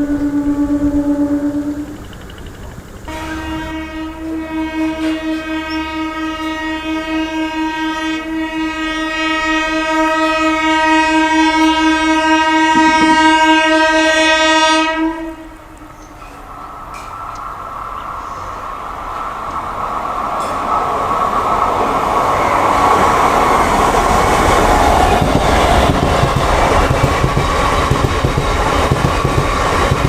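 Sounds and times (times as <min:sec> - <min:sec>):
train horn long blast: 0:00.0 - 0:02.0, 0:03.1 - 0:16.3
train running noise: 0:00.0 - 0:30.0.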